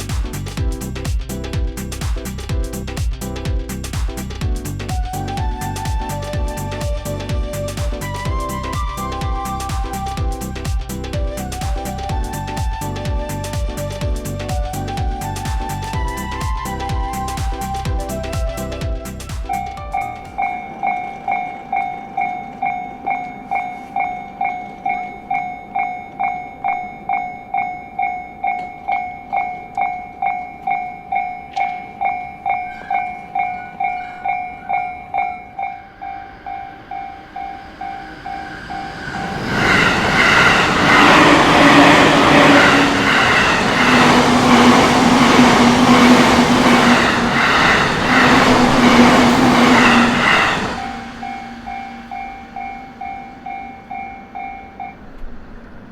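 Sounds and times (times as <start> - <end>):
train wheel and running noise: 0.0 - 55.9
level crossing bell ringing: 19.9 - 38.8, 49.2 - 55.1.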